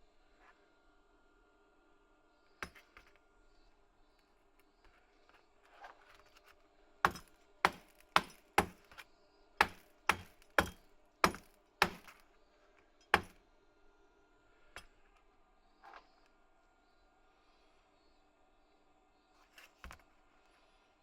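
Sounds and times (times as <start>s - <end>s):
hammer striking metal: 7.1s - 8.8s, 9.6s - 12.1s, 13.1s - 13.4s.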